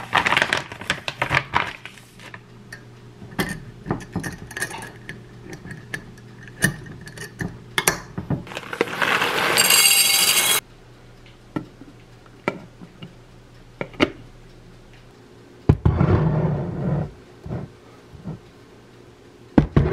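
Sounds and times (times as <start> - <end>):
dishes and utensils clinking: 9.1 - 10.6.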